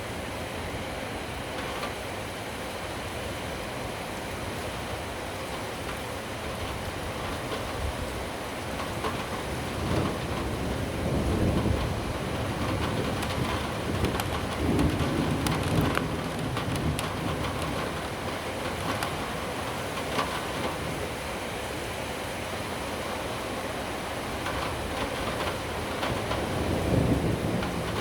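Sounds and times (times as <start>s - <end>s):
steady rain: 0.0s - 28.0s
distant thunder rumble: 8.8s - 21.1s, 24.4s - 28.0s.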